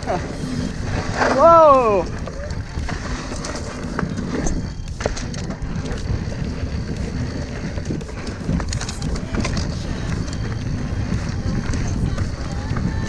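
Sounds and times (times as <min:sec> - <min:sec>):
bike knocking and rattling: 0:00.0 - 0:13.0
bike tyres rumbling on dirt: 0:00.0 - 0:13.0
wind on microphone: 0:00.0 - 0:13.0.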